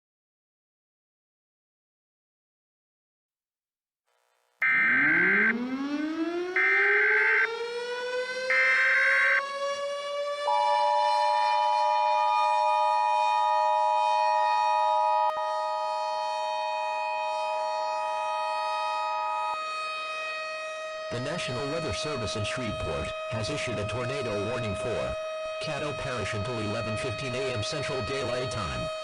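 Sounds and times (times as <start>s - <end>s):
two-tone attention signal: 4.6s - 5.9s
civil defense siren wailing: 4.6s - 29.0s.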